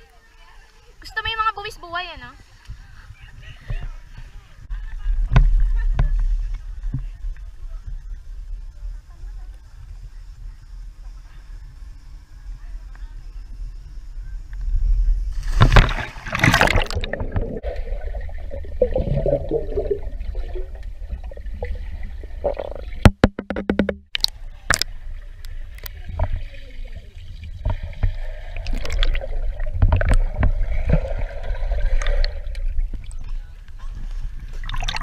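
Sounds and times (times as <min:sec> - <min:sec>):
water splashing and gurgling: 0:15.3 - 0:35.0.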